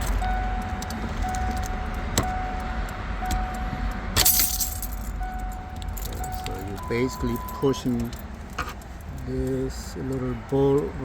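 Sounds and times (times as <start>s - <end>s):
car warning chime beeping: 0.0s - 8.4s
keys jingling: 4.2s - 9.1s.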